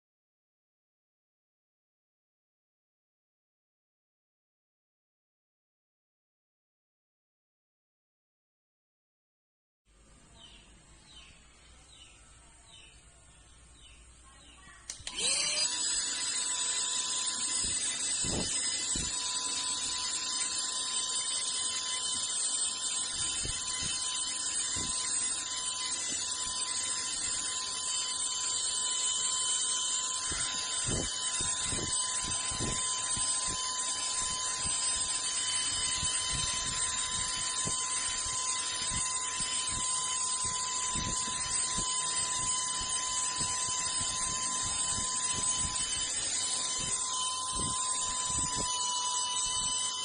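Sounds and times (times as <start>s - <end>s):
handheld vacuum whine: 14.8s - 50.0s.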